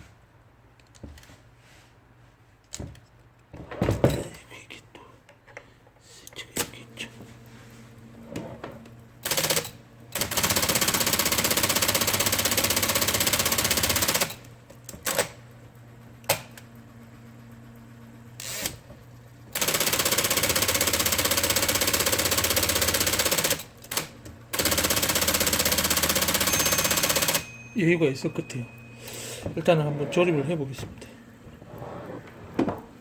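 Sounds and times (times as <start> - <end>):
typewriter mechanical clatter: 9.2 - 14.4, 19.6 - 27.4.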